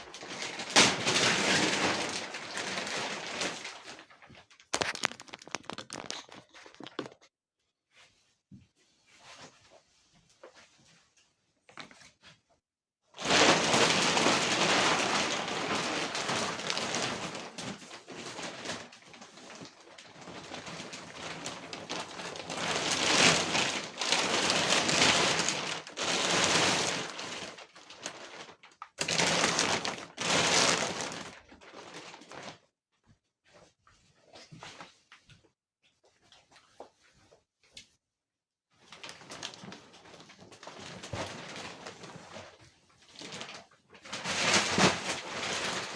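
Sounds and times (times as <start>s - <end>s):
plastic packaging crinkling and tearing: 0.0s - 7.2s, 13.2s - 32.6s, 38.9s - 45.9s.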